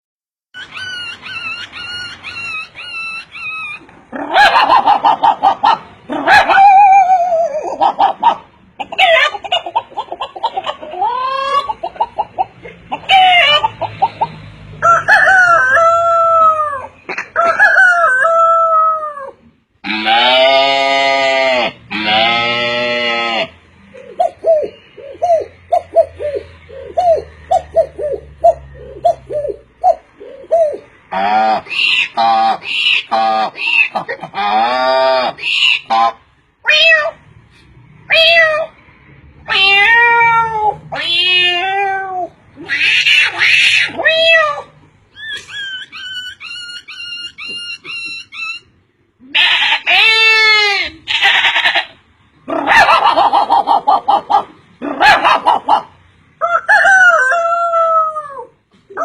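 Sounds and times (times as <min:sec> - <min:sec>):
man imitating animal calls: 0:18.3 - 0:37.2.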